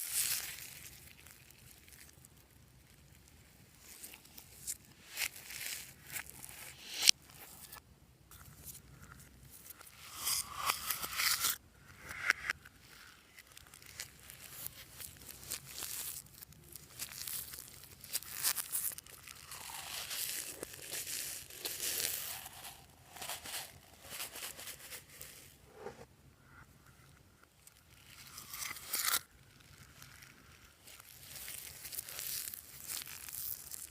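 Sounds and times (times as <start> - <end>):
slime crackling and tearing: 0.0 - 7.8, 12.4 - 25.4, 27.6 - 33.9.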